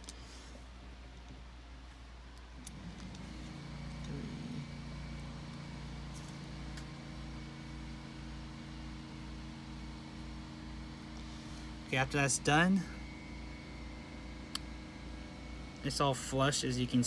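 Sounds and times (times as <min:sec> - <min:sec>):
low motor hum: 0:00.5 - 0:17.0.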